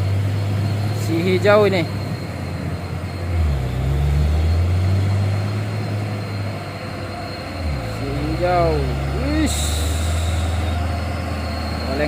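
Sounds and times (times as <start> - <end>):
truck diesel engine driving past: 0.0 - 12.0.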